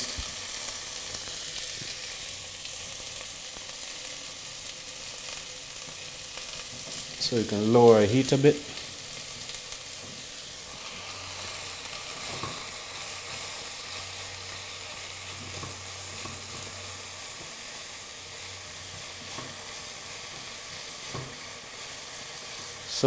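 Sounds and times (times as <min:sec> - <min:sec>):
onions being stirred: 0:00.0 - 0:23.0
onions sizzling in a pan: 0:00.0 - 0:23.0.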